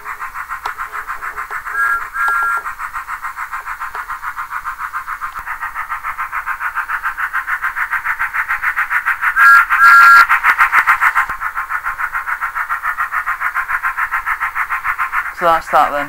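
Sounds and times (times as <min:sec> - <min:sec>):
model train steam chuffs: 0:00.0 - 0:16.0
two-tone train whistle: 0:01.6 - 0:02.7, 0:09.4 - 0:10.3.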